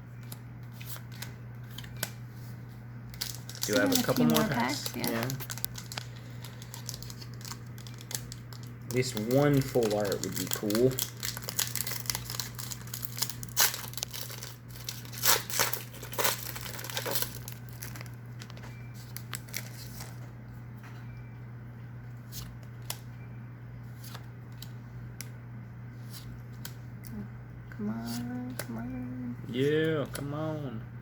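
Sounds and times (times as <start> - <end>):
steady low hum: 0.0 - 31.0
foil wrapper crinkling and tearing: 3.1 - 20.2
cards clicking: 30.0 - 30.3.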